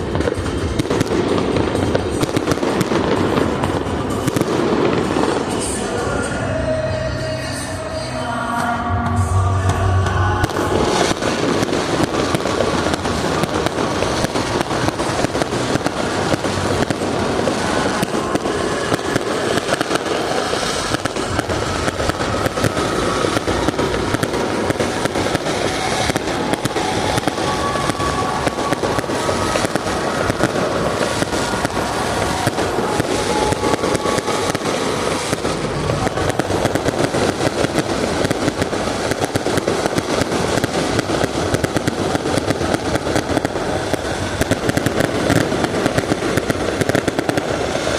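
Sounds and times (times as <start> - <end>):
fireworks crackling and popping: 0.0 - 7.8, 9.2 - 47.9.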